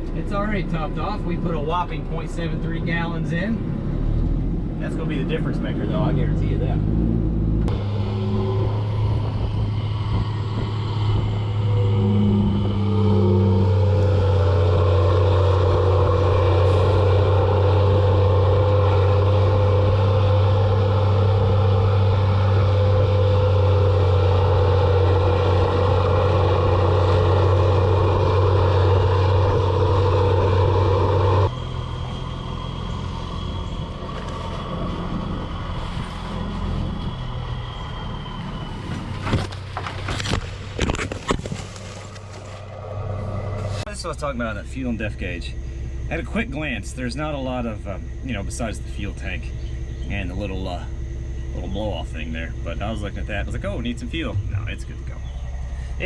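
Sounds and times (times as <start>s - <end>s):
excavator diesel engine running: 0.0s - 40.9s, 42.1s - 56.0s.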